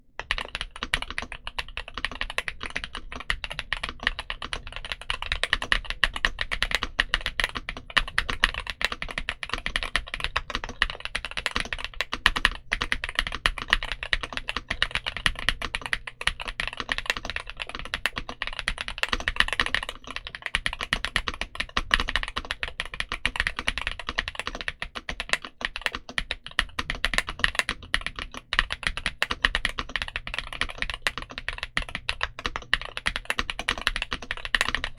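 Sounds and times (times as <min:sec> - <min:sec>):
mechanical keyboard typing: 0:00.2 - 0:34.9.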